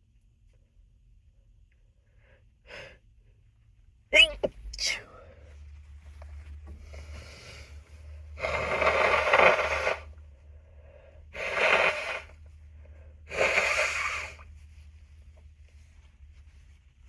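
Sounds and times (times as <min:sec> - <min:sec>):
person blowing nose: 0:08.4 - 0:10.1, 0:11.3 - 0:12.4, 0:13.3 - 0:14.4.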